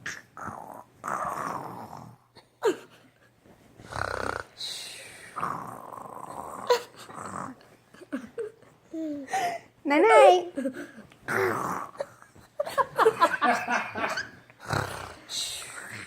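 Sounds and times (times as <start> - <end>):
person snoring: 3.8 - 7.6, 11.3 - 12.1, 14.6 - 16.0.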